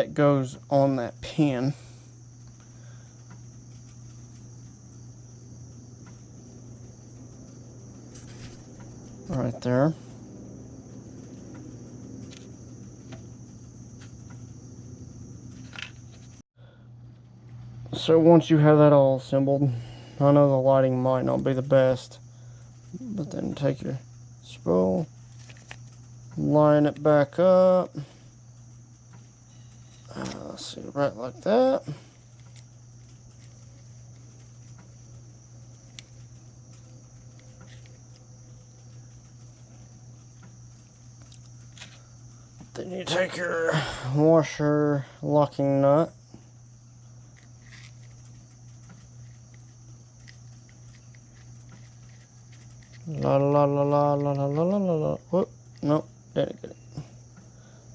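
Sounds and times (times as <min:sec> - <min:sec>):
steady low hum: 0:00.0 - 0:57.9
steady high tone: 0:42.8 - 0:44.2
reel parts clicking: 0:47.3 - 0:54.7.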